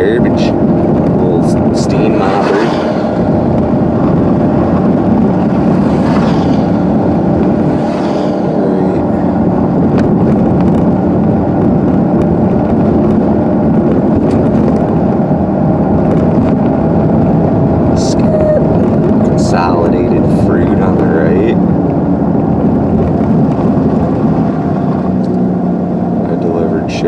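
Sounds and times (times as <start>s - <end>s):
car engine hum: 0.0s - 27.0s
road noise: 0.0s - 27.0s.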